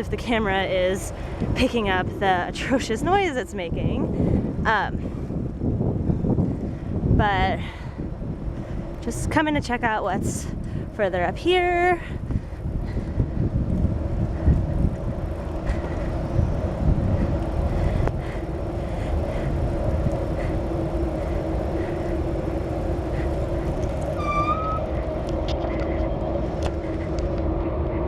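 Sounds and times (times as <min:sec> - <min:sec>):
low rumble: 0:00.0 - 0:28.0
short rising high tone: 0:24.1 - 0:25.0.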